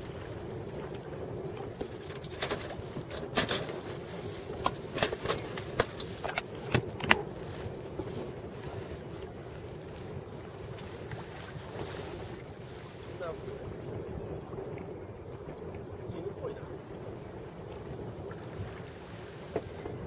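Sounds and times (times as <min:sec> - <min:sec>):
wind: 0:00.0 - 0:20.0.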